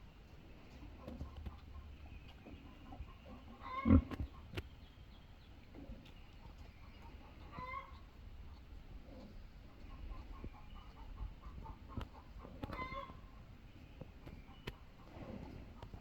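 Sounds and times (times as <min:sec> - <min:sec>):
pig grunting: 0:03.7 - 0:04.2.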